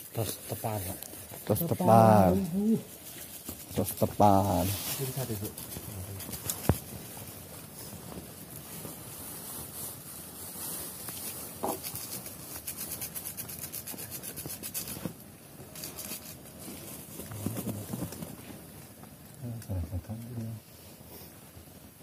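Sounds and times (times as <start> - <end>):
rustling near microphone: 0.0 - 19.5.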